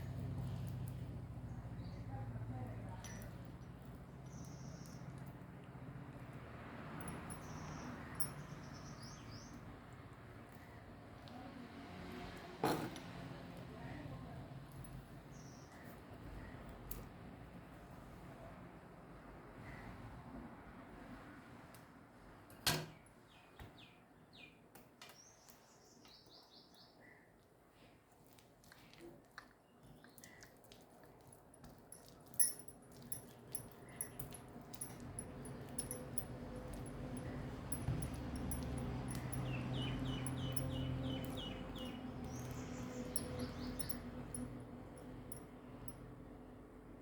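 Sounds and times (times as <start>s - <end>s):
small bird chirping: 4.2s - 5.3s, 37.2s - 44.4s.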